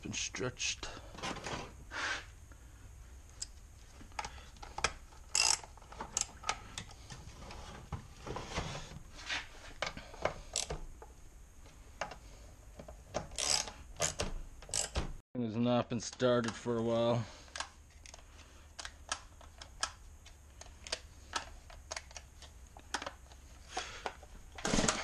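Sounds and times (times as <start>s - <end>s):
chainsaw chain clicking and scraping: 5.2s - 6.8s, 10.4s - 10.7s, 13.3s - 15.0s.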